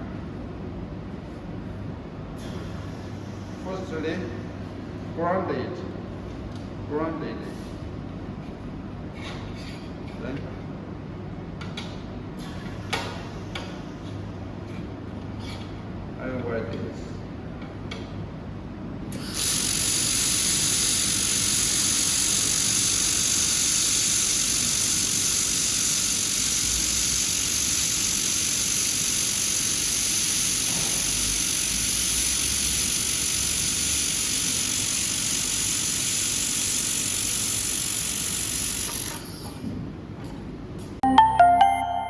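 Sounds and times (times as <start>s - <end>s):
laser welder hiss and whine: 2.4s - 4.4s, 12.4s - 14.2s, 19.1s - 39.6s.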